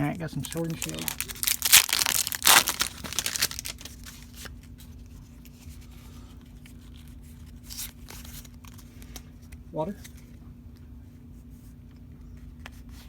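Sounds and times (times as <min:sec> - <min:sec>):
cards rustling: 0:00.3 - 0:04.6, 0:06.6 - 0:10.3
foil wrapper crinkling: 0:00.3 - 0:04.7.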